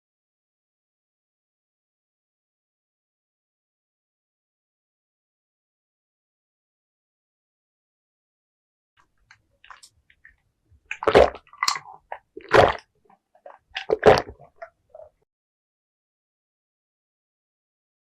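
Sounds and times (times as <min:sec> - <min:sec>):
wet mouth clicks: 0:09.6 - 0:12.8, 0:13.4 - 0:15.1
person swallowing a drink: 0:10.9 - 0:15.2.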